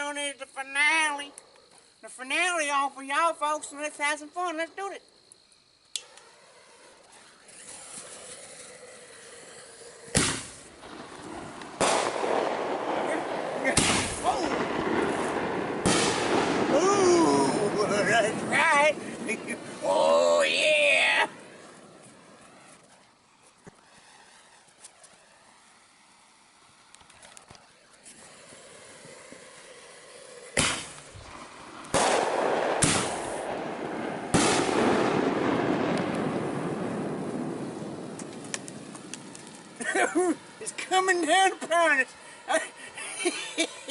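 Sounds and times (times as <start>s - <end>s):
firework fuse hissing: 0.0s - 43.9s
firework bang: 6.5s - 19.9s, 27.0s - 40.6s.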